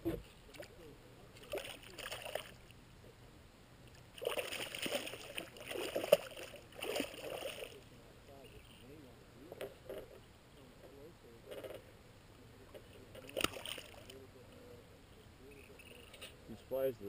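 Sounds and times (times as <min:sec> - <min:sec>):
water splashing against boat: 0:01.4 - 0:02.7, 0:04.1 - 0:07.9, 0:12.9 - 0:14.2.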